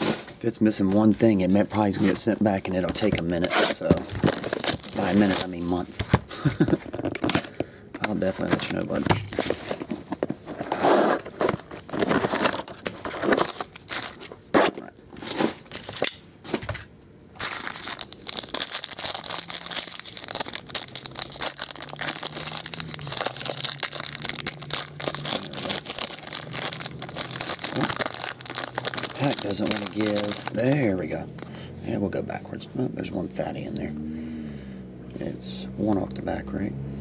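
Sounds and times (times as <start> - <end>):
plastic crinkling: 2.1 - 6.0, 6.6 - 14.4, 17.4 - 31.6
plastic wrapping tearing: 3.0 - 5.8, 10.7 - 14.3, 17.4 - 31.5.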